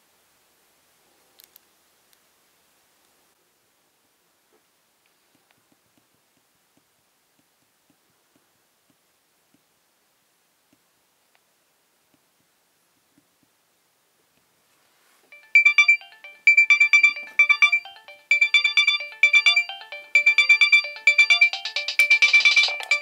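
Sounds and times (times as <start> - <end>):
synthesized ringtone melody: 15.3 - 23.0.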